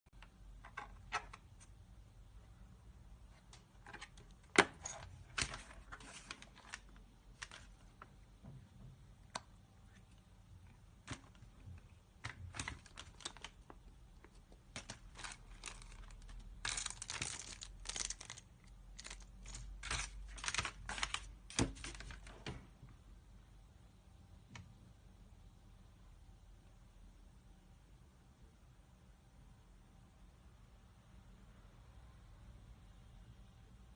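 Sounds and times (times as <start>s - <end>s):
packaging crinkling: 5.2s - 8.1s, 11.1s - 22.3s.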